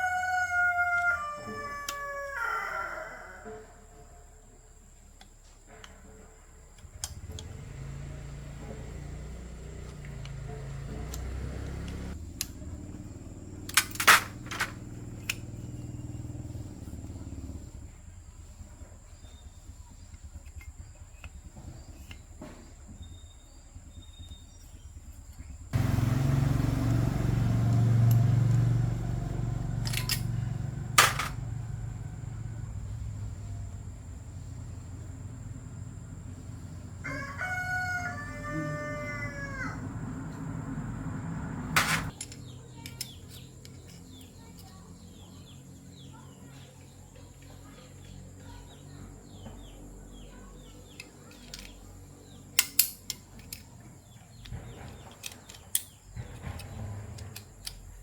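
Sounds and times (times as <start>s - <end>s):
motor humming: 6.8s - 13.2s, 25.6s - 37.2s.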